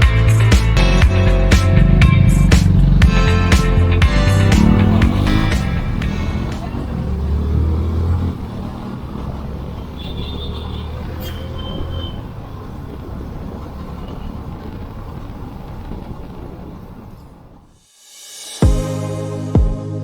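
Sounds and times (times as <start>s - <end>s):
vehicle engine rumble: 0.0s - 17.7s
road and wind noise: 0.0s - 17.8s
low hum: 0.8s - 7.0s.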